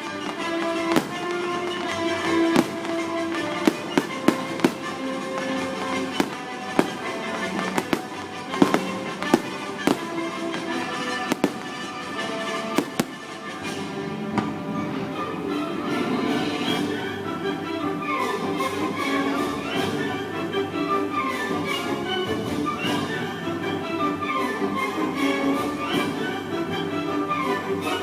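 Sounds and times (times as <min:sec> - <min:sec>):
fireworks bangs: 0:00.0 - 0:13.9
music with held notes: 0:00.0 - 0:28.0.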